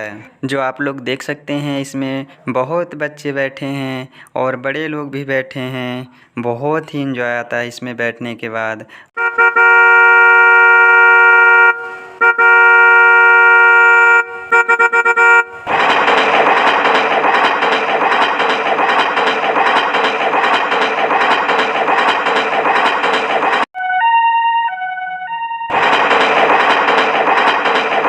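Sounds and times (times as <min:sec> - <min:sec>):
train horn: 0:09.2 - 0:15.7, 0:23.8 - 0:25.9
train running rattle: 0:11.4 - 0:23.7, 0:25.7 - 0:28.0.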